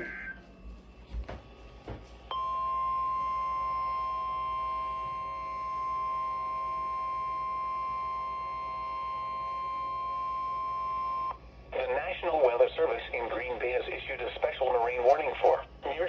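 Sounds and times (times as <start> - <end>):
steady alarm tone: 0.0 - 11.4.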